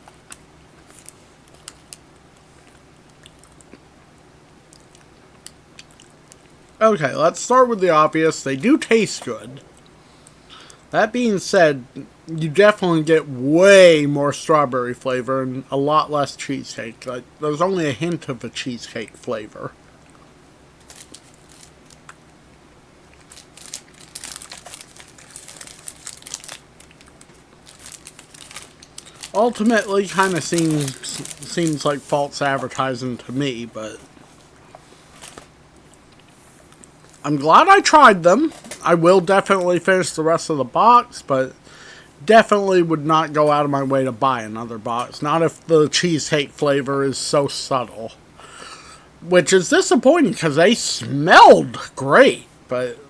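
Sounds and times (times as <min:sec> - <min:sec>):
packaging crinkling: 0:00.0 - 0:03.8, 0:20.8 - 0:22.3, 0:23.1 - 0:32.8, 0:35.0 - 0:36.0
faint steady hum: 0:00.0 - 0:53.0
person chewing: 0:00.2 - 0:06.6, 0:34.5 - 0:37.1.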